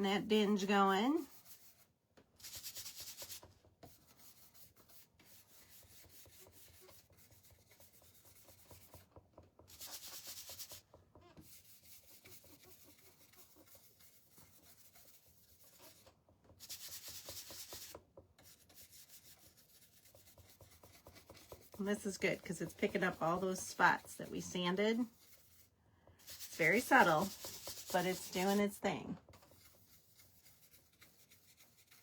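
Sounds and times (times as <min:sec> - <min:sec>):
wax rubbing on wood: 0:11.4 - 0:16.0, 0:18.6 - 0:32.0.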